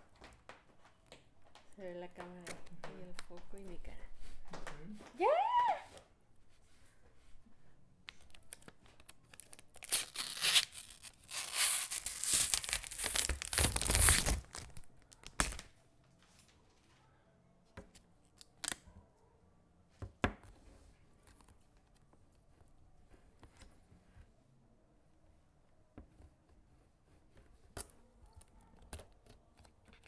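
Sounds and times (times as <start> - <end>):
packaging ripping and crinkling: 8.3 - 15.7.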